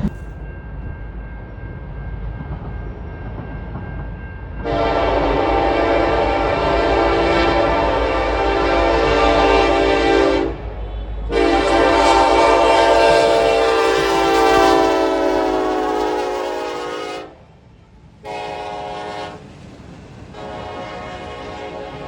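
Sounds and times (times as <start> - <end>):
low train rumble: 0.0 - 22.0
locomotive air horn blasts: 4.6 - 17.4, 18.2 - 19.4, 20.3 - 22.0.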